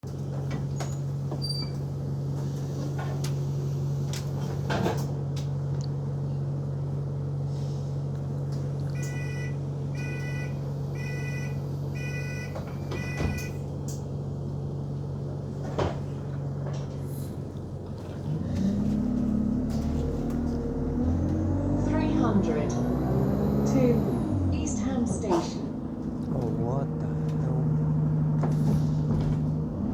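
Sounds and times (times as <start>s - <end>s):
bus diesel engine idling: 0.0s - 29.9s
bus door warning beeps: 8.9s - 13.7s
knocks and clunks: 28.3s - 29.7s.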